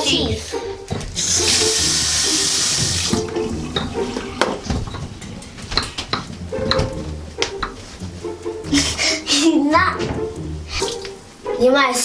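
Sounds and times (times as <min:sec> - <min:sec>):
sink tap running: 0:00.9 - 0:08.8.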